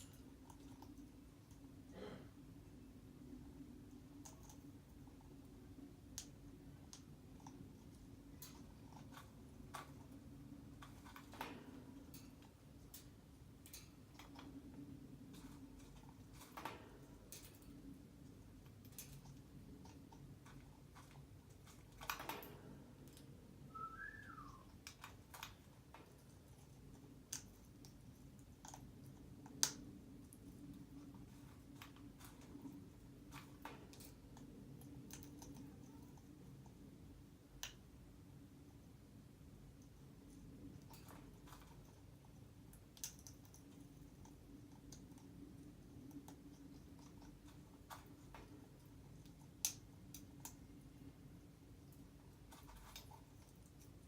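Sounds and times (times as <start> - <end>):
faint steady hum: 0.0 - 54.0
parrot whistle: 23.7 - 24.7.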